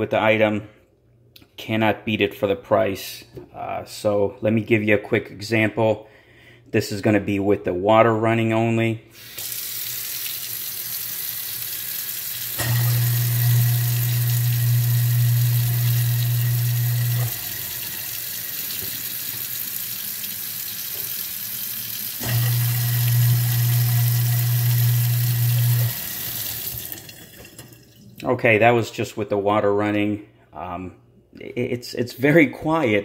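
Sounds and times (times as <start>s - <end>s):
garbage disposal humming: 9.2s - 28.4s
tap water running into sink: 9.3s - 28.3s.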